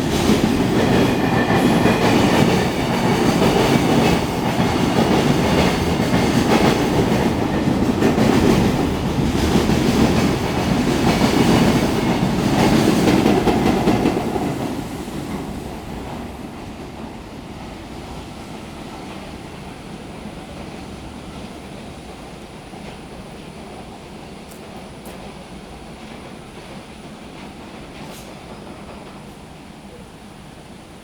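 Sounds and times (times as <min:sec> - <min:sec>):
freight train wheels clattering: 0:00.0 - 0:29.7.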